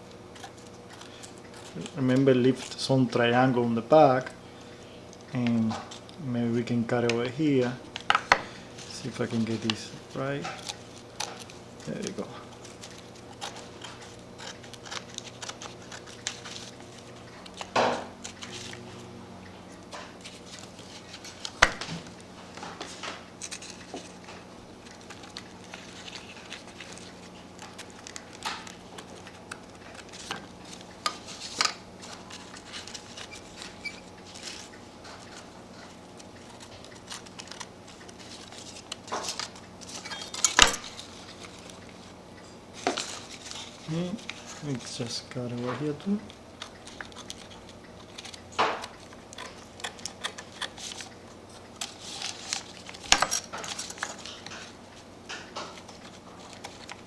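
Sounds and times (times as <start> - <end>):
faint steady hum: 0.0 - 57.0.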